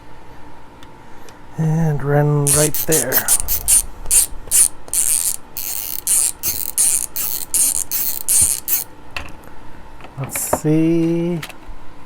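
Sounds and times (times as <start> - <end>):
hand tool rasping strokes: 2.5 - 8.9.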